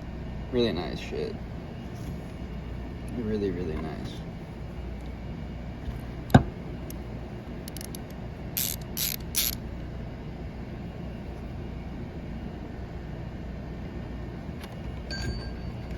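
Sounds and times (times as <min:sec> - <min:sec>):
steady low hum: 0:00.0 - 0:15.9
hand ratchet clicking: 0:07.7 - 0:09.6.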